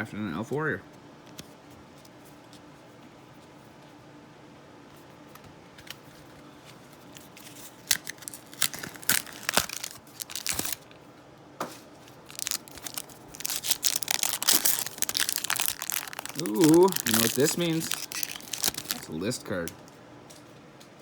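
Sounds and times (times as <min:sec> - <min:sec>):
cards being handled: 0:05.8 - 0:11.0, 0:12.0 - 0:19.9
foil wrapper crinkling and tearing: 0:07.0 - 0:11.0, 0:12.1 - 0:19.9.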